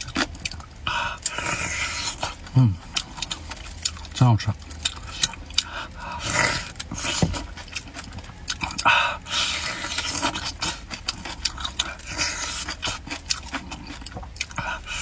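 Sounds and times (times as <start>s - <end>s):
wet chewing and smacking: 0.0s - 15.0s
breathy huffing breaths: 0.8s - 2.8s, 5.6s - 7.3s, 8.8s - 12.9s, 14.5s - 15.0s.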